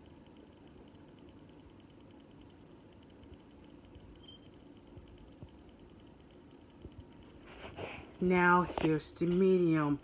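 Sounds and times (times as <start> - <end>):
rapid high ticking: 0.0 - 7.3
ceiling fan hum: 0.0 - 10.0.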